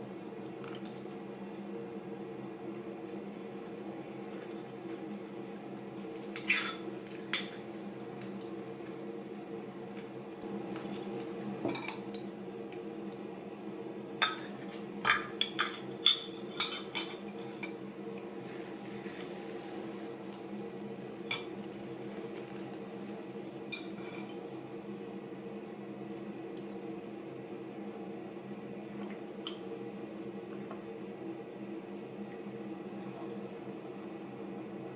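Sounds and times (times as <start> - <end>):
steady low hum: 0.0 - 34.9
dishes and cutlery clinking: 23.7 - 24.4.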